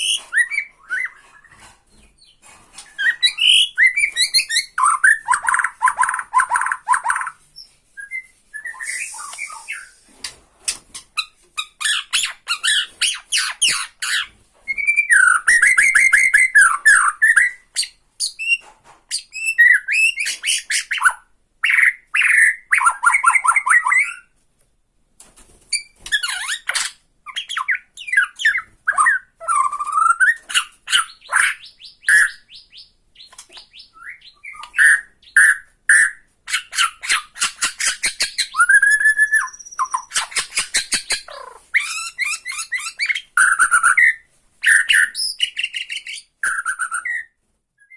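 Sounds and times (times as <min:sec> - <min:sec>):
bird singing varied phrases: 0:27.3 - 0:37.0, 0:38.4 - 0:47.9.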